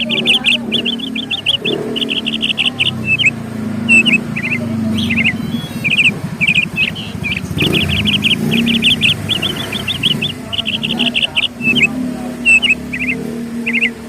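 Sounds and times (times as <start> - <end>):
small birds chirping: 0.0 - 14.0
steady low hum: 0.0 - 14.0.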